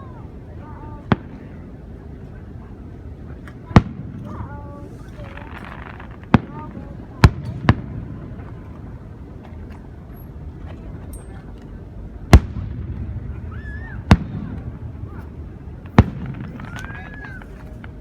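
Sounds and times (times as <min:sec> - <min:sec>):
steady low rumble: 0:00.0 - 0:18.0
fireworks shells bursting: 0:03.4 - 0:11.3, 0:12.3 - 0:18.0.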